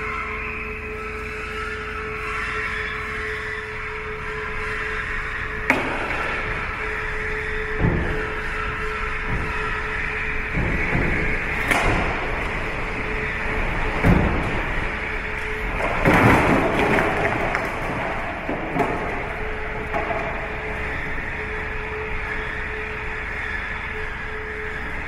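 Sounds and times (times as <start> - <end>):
mechanical rumble with hum: 0.0 - 25.0
loud rattling: 4.3 - 25.0
sharp knocks: 5.6 - 13.2, 13.8 - 20.4.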